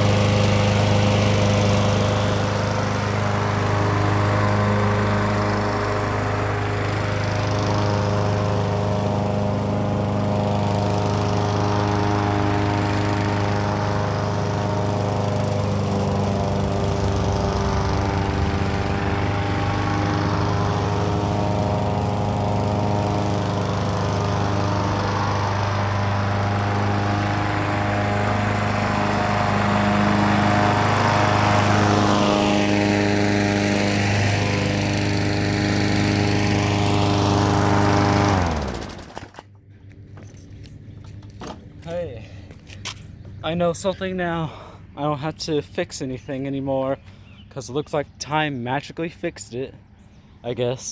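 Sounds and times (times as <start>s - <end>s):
lawn mower engine running: 0.0s - 44.1s.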